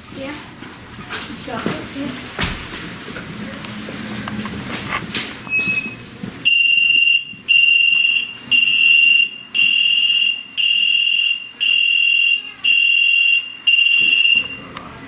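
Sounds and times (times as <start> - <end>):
electronic alarm beeping: 5.5 - 14.7.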